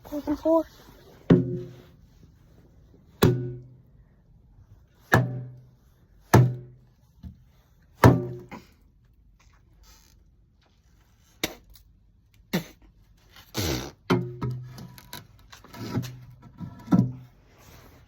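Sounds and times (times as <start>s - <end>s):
hollow knocks with low ringing: 3.2s - 3.8s, 5.1s - 5.6s.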